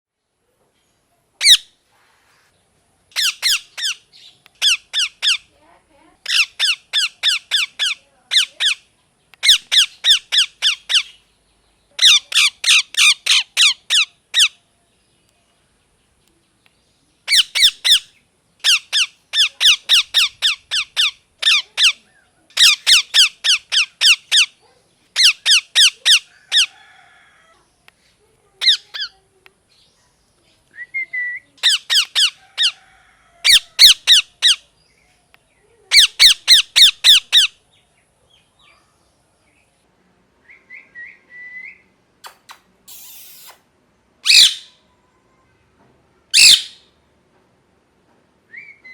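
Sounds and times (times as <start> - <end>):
parakeet squawking: 1.4 - 1.7, 3.1 - 5.5, 6.2 - 8.8, 9.4 - 11.2, 12.0 - 14.6, 17.3 - 22.0, 22.6 - 24.6, 25.2 - 26.7, 28.6 - 29.2, 31.6 - 32.8, 33.5 - 34.6, 35.9 - 37.5, 44.2 - 44.8, 46.4 - 46.8.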